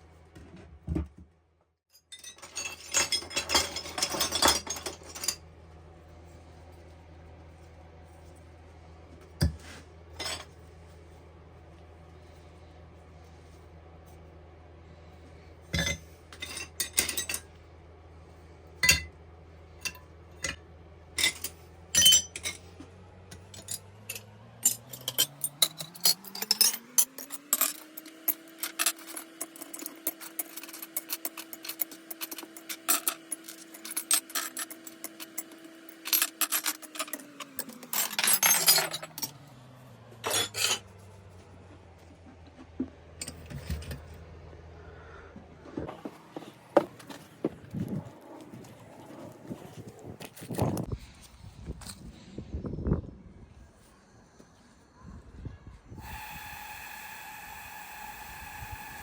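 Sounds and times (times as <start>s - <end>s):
metal tools clinking: 1.9s - 5.4s, 10.2s - 10.6s, 15.8s - 17.5s, 21.2s - 39.5s, 40.2s - 41.2s, 43.2s - 44.2s
low machine hum: 2.3s - 59.0s.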